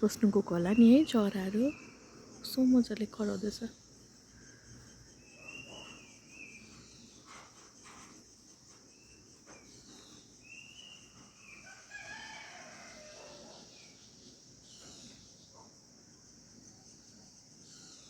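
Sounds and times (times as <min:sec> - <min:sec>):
faint bird chirps and whistles: 0:04.8 - 0:08.1, 0:08.9 - 0:11.6
low multi-tone bird call: 0:05.2 - 0:08.0.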